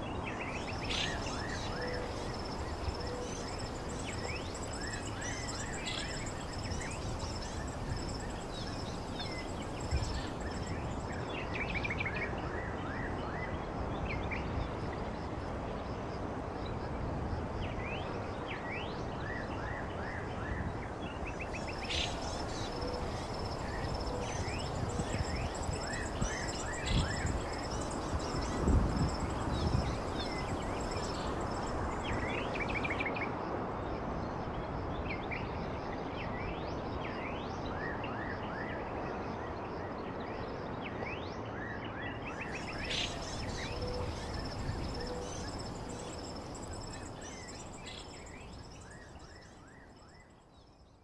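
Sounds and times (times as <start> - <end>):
insects trilling: 0.4 - 11.5, 21.4 - 32.9, 42.3 - 50.2.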